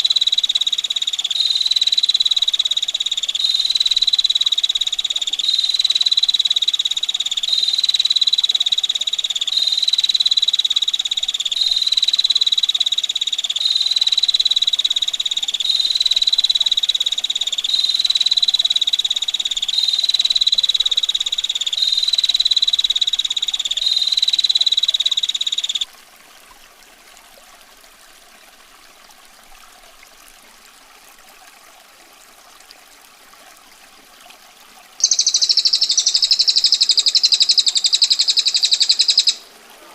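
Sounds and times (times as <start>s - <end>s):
faint running water hiss: 0.0s - 39.9s
bird harsh rattling trill: 35.0s - 39.4s.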